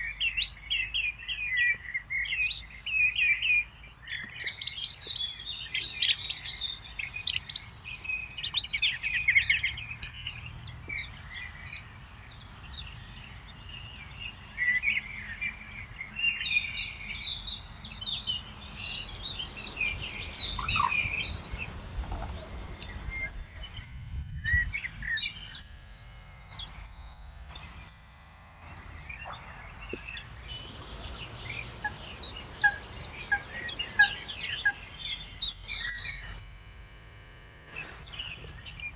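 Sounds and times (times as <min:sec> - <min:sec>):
songbirds chirping and singing: 0:09.7 - 0:23.3, 0:30.2 - 0:35.5.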